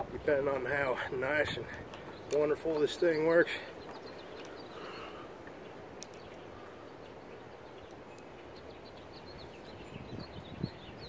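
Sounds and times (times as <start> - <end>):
outdoor background noise: 0.0 - 11.0.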